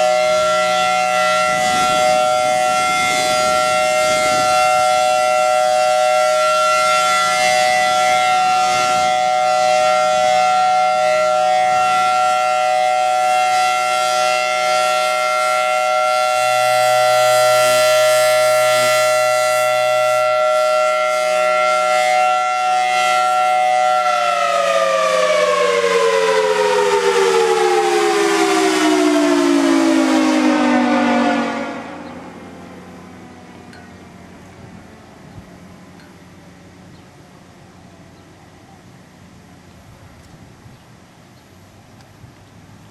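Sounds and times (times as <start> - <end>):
tornado siren wailing: 0.0 - 40.7.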